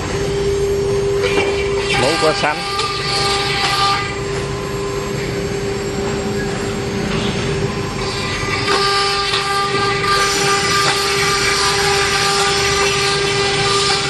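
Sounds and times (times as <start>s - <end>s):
spindle whine: 0.0s - 14.0s
hissing cutting noise: 7.6s - 14.0s.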